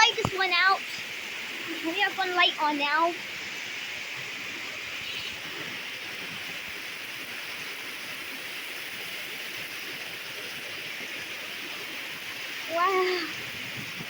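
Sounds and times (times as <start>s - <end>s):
heavy rain pouring: 0.0s - 7.4s, 11.6s - 14.0s.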